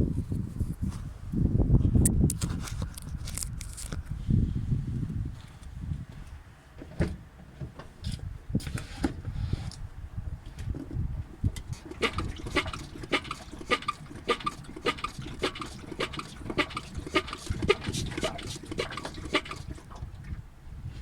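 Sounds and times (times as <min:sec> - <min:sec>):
car suspension creaking and knocking: 0:10.6 - 0:20.4.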